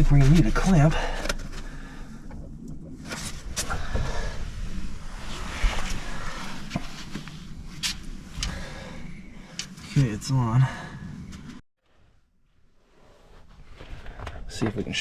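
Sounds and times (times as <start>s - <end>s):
hands rustling and rubbing hose: 3.0s - 8.7s.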